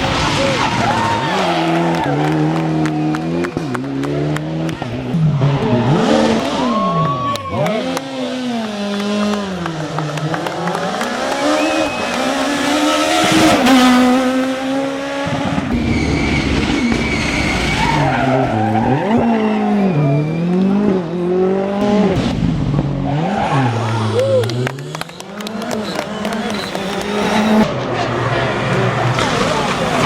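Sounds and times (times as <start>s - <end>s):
rally car engine revving: 0.0s - 30.0s
tyre noise with squeal: 11.5s - 14.0s, 15.5s - 27.7s.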